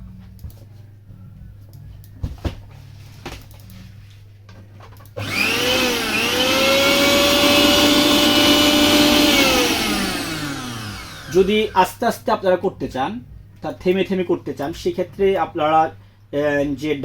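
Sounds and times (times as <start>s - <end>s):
mixer grinder motor whine: 5.2s - 11.8s.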